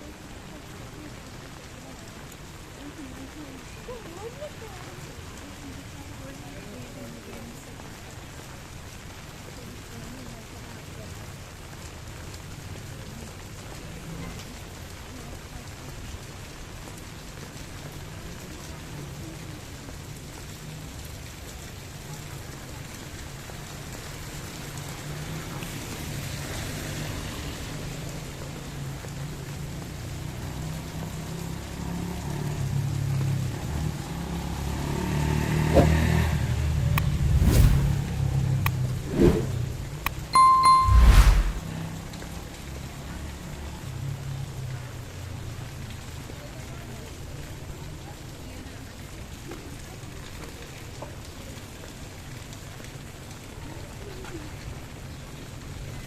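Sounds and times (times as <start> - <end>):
rain pattering: 0.0 - 37.4, 41.8 - 56.0
car engine passing: 34.4 - 39.9
low rumble: 37.0 - 38.4.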